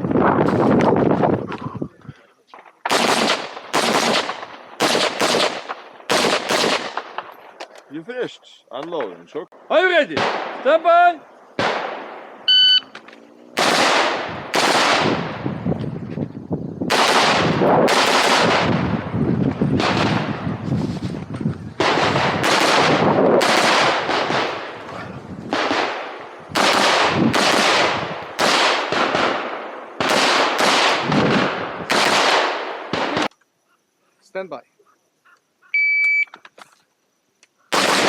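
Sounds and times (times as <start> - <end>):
rifle shots echoing: 2.8 - 7.4, 10.0 - 12.4, 13.5 - 15.4, 16.9 - 19.1, 19.8 - 20.4, 21.8 - 24.8, 25.5 - 33.3, 37.7 - 38.0.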